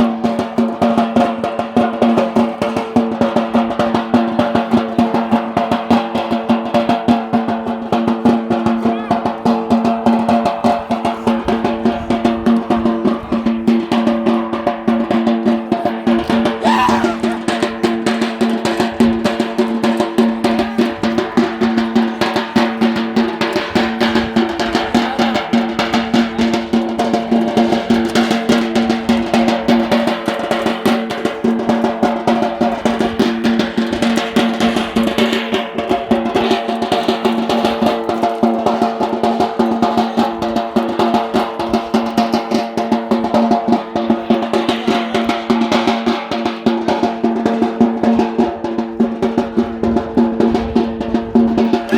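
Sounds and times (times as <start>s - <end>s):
fast dense drumming: 0.0s - 51.9s.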